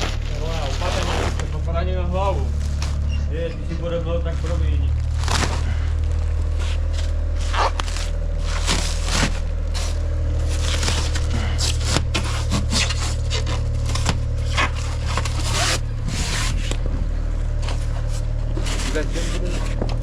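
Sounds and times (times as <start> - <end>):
low machine drone: 0.0 - 20.0
scraping and crunching knocks: 5.0 - 20.0.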